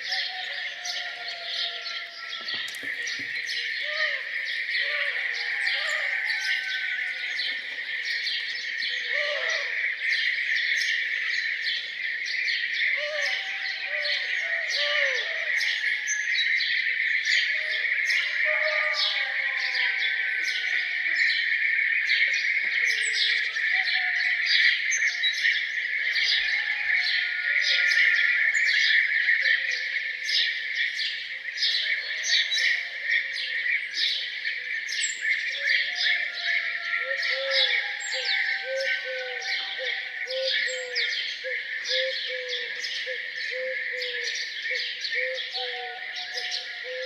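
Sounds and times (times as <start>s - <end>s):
low arching bird calls: 0.0s - 12.0s, 26.0s - 47.0s
birds chorus: 0.0s - 47.0s.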